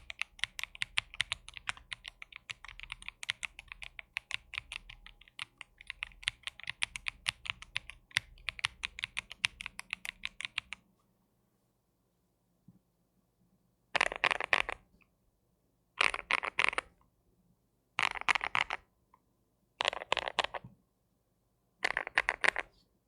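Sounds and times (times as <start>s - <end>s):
mechanical keyboard typing: 0.0s - 10.8s, 14.0s - 14.8s, 16.0s - 16.9s, 18.0s - 18.8s, 19.8s - 20.6s, 21.8s - 22.7s.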